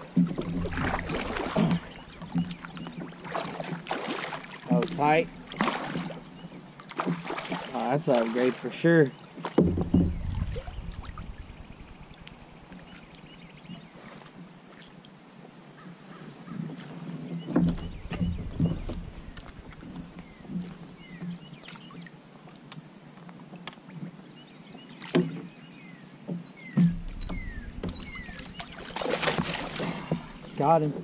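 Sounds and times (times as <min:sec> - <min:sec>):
fish splashing in water: 0:00.0 - 0:08.8, 0:26.8 - 0:30.8
knocks of fishing gear and boat: 0:00.0 - 0:13.3, 0:17.4 - 0:21.4, 0:25.0 - 0:25.5, 0:26.3 - 0:31.0.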